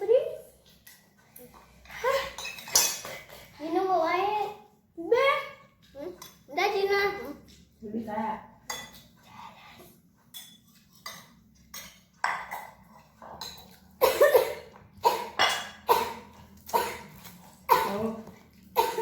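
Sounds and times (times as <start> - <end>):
spoon clinking on a bowl: 2.3 - 3.4, 8.7 - 9.1, 10.3 - 13.9, 15.3 - 15.9
person coughing: 14.0 - 17.1, 18.8 - 19.0.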